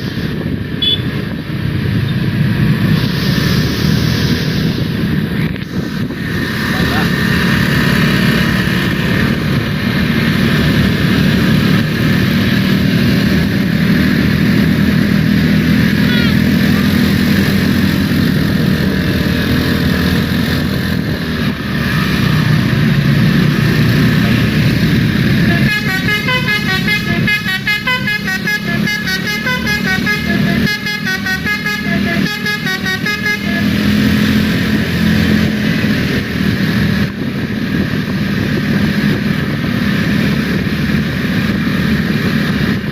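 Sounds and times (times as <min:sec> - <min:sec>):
vehicle engine and traffic: 0:00.0 - 0:42.9
musical bus horn melody: 0:00.8 - 0:01.1, 0:16.0 - 0:16.5, 0:25.3 - 0:34.3.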